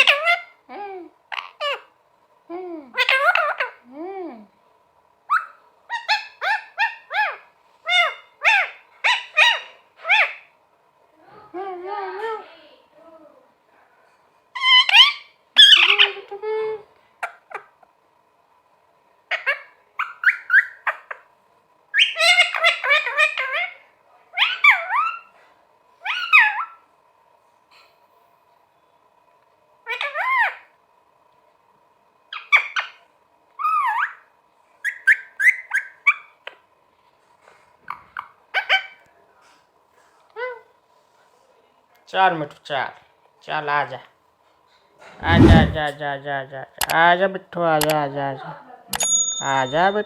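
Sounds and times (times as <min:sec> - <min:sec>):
parrot calling: 0:00.0 - 0:00.6, 0:01.3 - 0:01.9, 0:02.9 - 0:03.9, 0:05.3 - 0:10.5, 0:14.6 - 0:16.3, 0:19.3 - 0:21.3, 0:22.0 - 0:25.3, 0:26.0 - 0:26.8, 0:29.8 - 0:30.7, 0:32.3 - 0:33.0, 0:33.6 - 0:36.6, 0:37.9 - 0:39.0.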